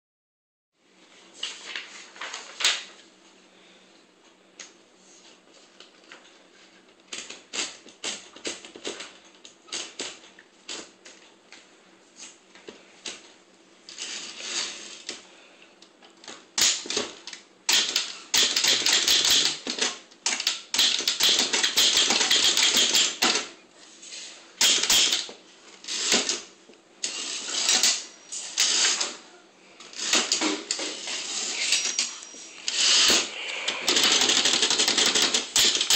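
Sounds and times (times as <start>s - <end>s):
typewriter keystrokes: 17.7s - 23.4s, 33.8s - 35.9s.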